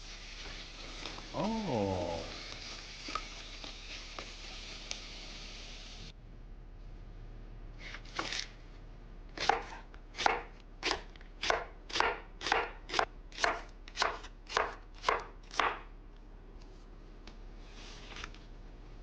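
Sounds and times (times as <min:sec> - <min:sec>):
knife chopping on cutting board: 0:09.4 - 0:15.9.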